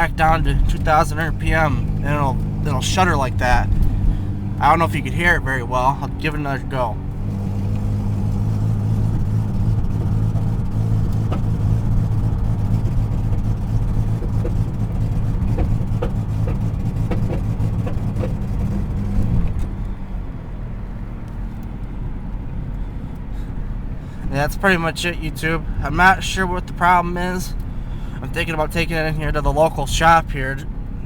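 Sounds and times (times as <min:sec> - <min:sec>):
car engine bogging down: 0:00.0 - 0:31.0.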